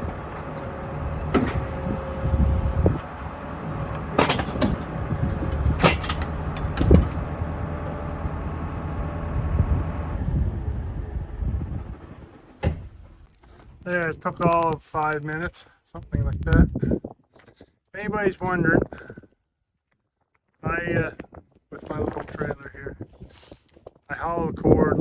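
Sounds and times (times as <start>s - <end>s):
diesel tractor engine running: 0.0s - 15.2s.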